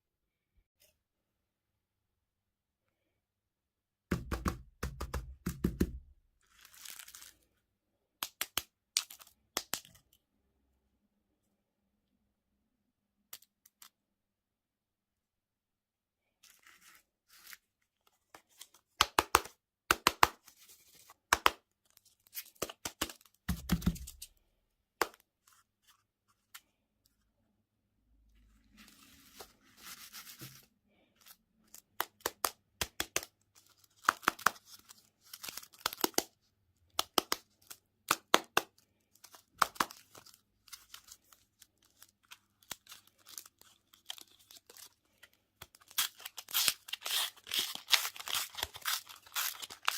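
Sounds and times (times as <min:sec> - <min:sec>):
candy wrapper crinkling: 0:06.4 - 0:07.6, 0:37.0 - 0:49.9.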